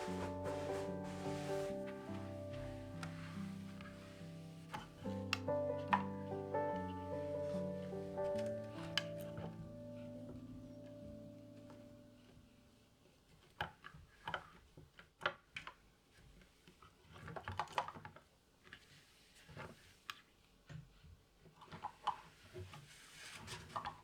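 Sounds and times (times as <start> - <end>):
short rustle: 0.0 - 10.7.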